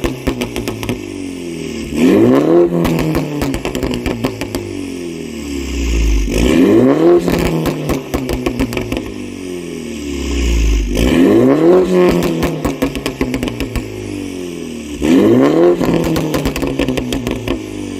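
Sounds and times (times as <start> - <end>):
exhaust crackles and pops: 0.0 - 1.0, 2.3 - 4.7, 7.2 - 9.2, 11.8 - 13.9, 15.0 - 17.6
car engine revving: 0.0 - 17.9.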